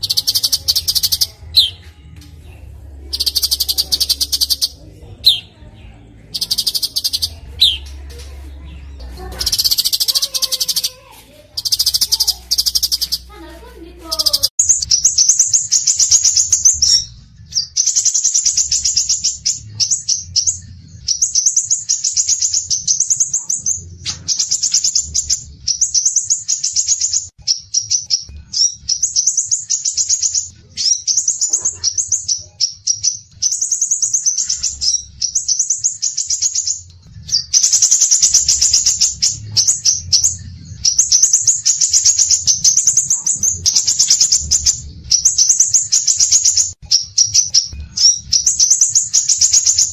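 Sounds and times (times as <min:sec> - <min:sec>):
songbird twittering: 0:00.0 - 0:01.8, 0:03.0 - 0:49.9.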